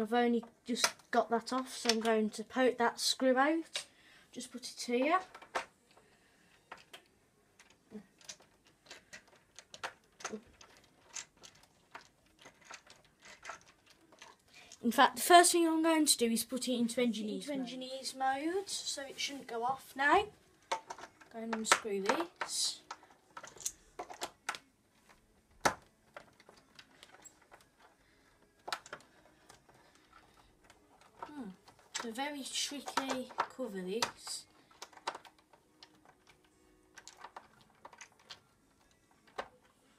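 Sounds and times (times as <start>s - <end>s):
small clicks and taps: 0.7s - 2.2s, 20.6s - 39.8s.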